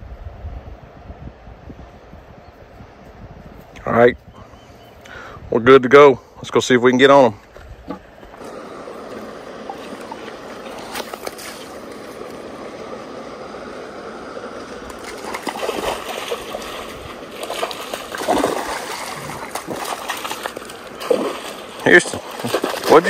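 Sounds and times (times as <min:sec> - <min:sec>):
water splashing: 0:07.9 - 0:23.0
rush of flowing floodwater: 0:08.4 - 0:23.0.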